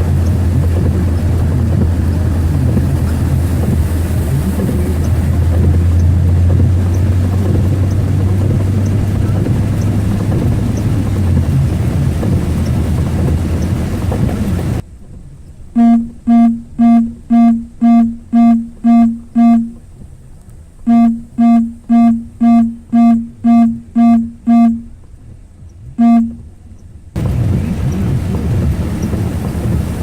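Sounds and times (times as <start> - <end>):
rain: 0.0 - 17.3, 18.1 - 22.8, 24.9 - 30.0
road noise: 0.0 - 30.0
seatbelt reminder chime: 15.8 - 19.8, 20.9 - 24.8.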